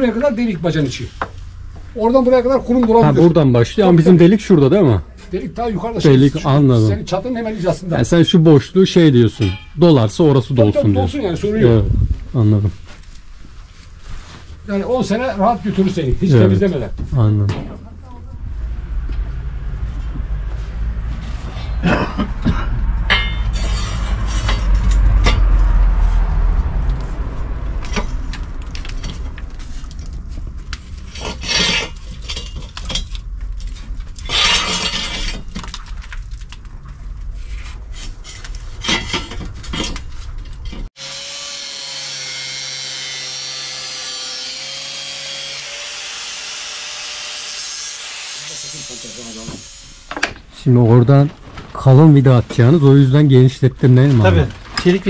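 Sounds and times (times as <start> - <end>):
low rumble: 11.2 - 12.9, 17.0 - 40.8
hand tool scraping masonry: 23.1 - 25.5, 31.0 - 35.6
power tool whine: 41.0 - 50.4.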